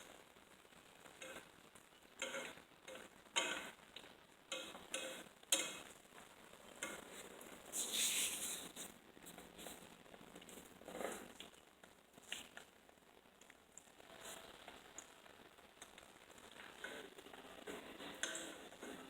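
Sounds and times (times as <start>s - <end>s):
food sizzling in oil: 0.0s - 8.7s
utensil scraping a pan: 2.2s - 3.7s, 6.8s - 8.8s.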